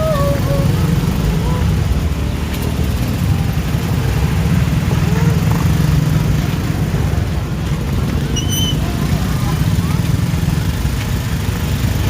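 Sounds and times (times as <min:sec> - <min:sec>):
bus engine low rumble: 0:00.0 - 0:12.0.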